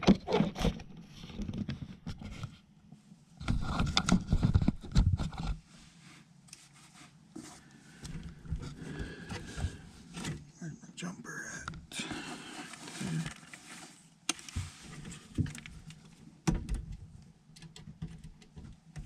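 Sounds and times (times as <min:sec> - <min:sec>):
scraping and rubbing handling noise: 0:00.2 - 0:10.6, 0:11.9 - 0:16.4.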